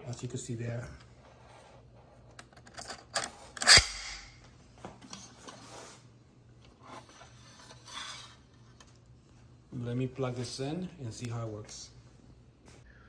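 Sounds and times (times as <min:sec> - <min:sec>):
loud sharp snap: 0:03.7 - 0:04.4.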